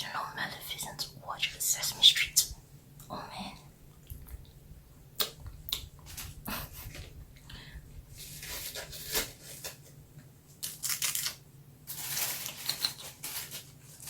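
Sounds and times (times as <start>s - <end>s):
wrapper crinkling and tearing: 8.2s - 9.9s, 10.6s - 14.0s.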